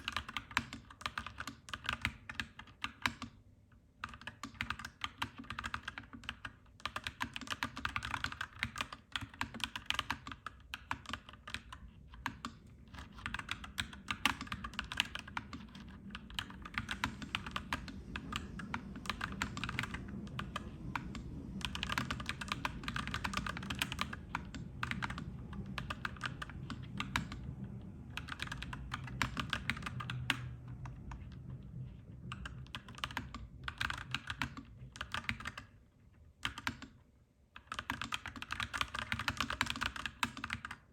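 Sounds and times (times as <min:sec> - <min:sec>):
typing on mechanical keyboard: 0:00.0 - 0:03.4, 0:04.0 - 0:35.8, 0:36.4 - 0:40.9
low rumble: 0:12.6 - 0:34.3.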